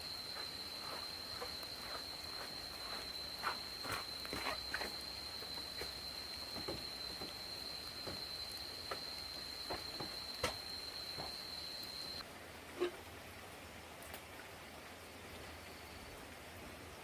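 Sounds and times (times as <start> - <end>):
high-pitched insect trill: 0.0 - 12.2
light taps and drips: 0.8 - 12.0, 14.0 - 14.4.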